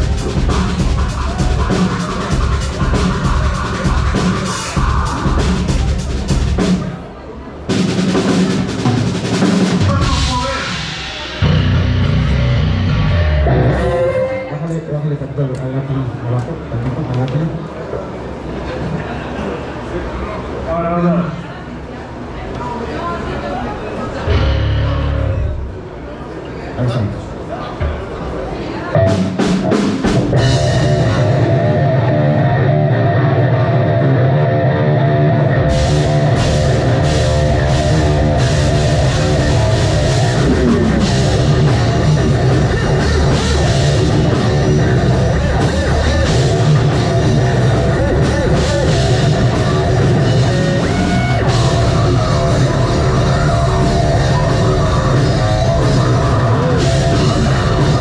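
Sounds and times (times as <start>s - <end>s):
distorted guitars and bass riff: 0.0s - 6.8s, 9.2s - 14.3s, 24.3s - 25.8s, 28.9s - 58.0s
drum kit with cymbals: 0.0s - 7.1s, 7.7s - 13.2s, 29.0s - 32.0s, 35.6s - 58.0s.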